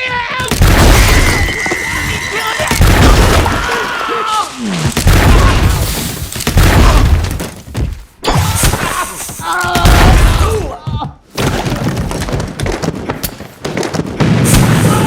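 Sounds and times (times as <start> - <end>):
shattering crashes: 0.6 - 7.5.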